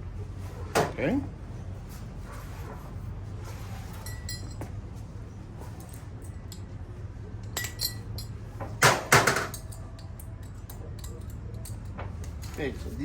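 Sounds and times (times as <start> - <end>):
steady low hum: 0.0 - 13.0
metal wand clicks and clinks: 7.4 - 8.4, 9.5 - 12.8.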